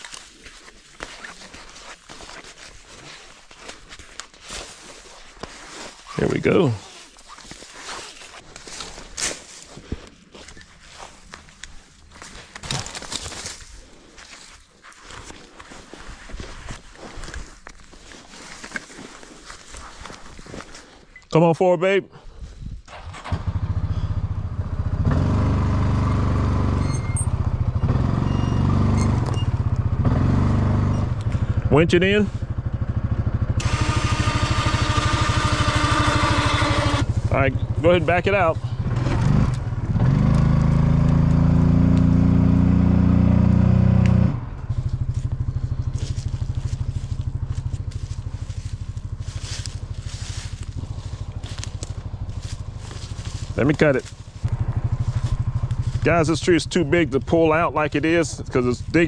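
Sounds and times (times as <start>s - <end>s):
crackling and scraping: 0.0s - 21.2s, 44.6s - 56.4s
utility vehicle engine revving: 22.9s - 59.0s.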